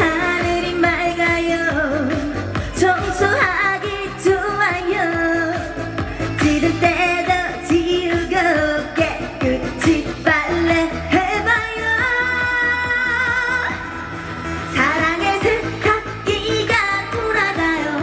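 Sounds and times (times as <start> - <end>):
amplified backing track: 0.0 - 18.0
woman singing: 0.0 - 18.0.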